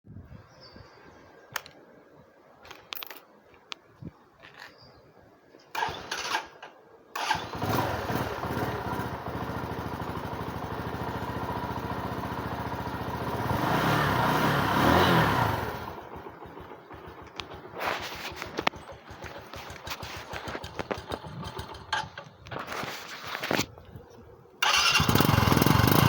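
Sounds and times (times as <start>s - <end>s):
motorcycle engine starting and idling: 5.7s - 23.6s, 24.6s - 26.0s.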